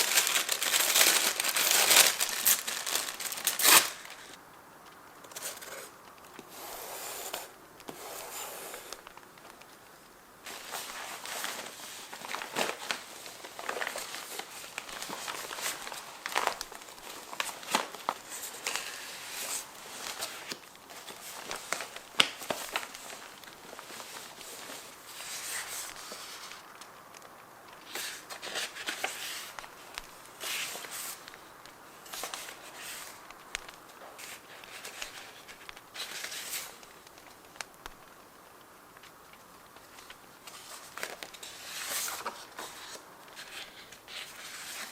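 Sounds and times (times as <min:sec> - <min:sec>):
paper rustling and crinkling: 0:00.0 - 0:04.4, 0:05.2 - 0:38.2, 0:39.0 - 0:44.9
bonfire crackle: 0:00.0 - 0:06.6, 0:08.7 - 0:44.6
sharp crackles and taps: 0:04.4 - 0:06.5, 0:08.9 - 0:10.7, 0:25.8 - 0:28.0, 0:29.5 - 0:41.4.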